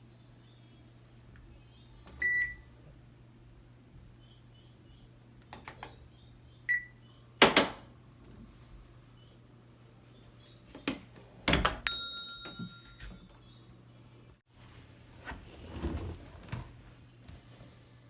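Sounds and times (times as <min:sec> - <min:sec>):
washing machine beeps: 0:02.2 - 0:02.7, 0:05.9 - 0:07.2, 0:11.9 - 0:13.7.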